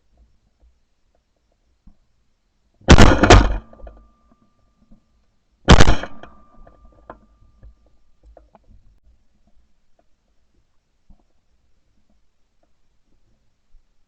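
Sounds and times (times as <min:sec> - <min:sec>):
shotgun blasts: 0:02.9 - 0:03.9, 0:05.7 - 0:06.5.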